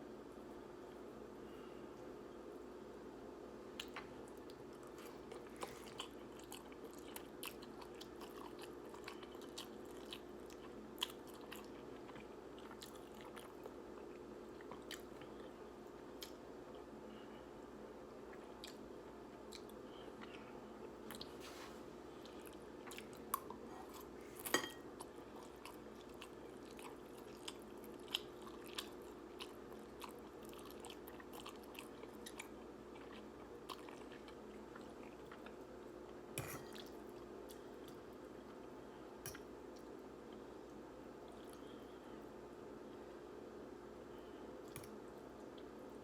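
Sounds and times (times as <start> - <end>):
steady low hum: 0.0 - 46.0
person chewing noodles: 3.8 - 16.9, 18.3 - 21.4, 22.1 - 38.6.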